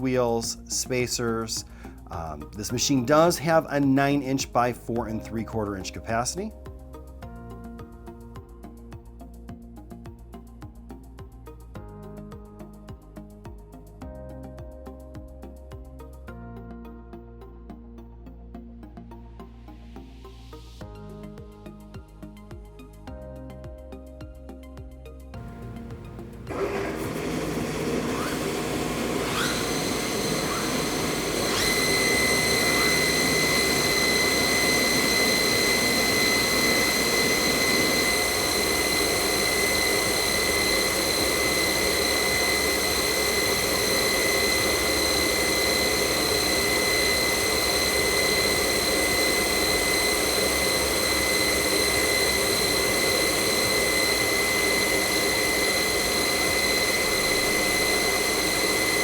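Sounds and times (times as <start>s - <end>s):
moulder machine high whine: 25.4s - 59.0s.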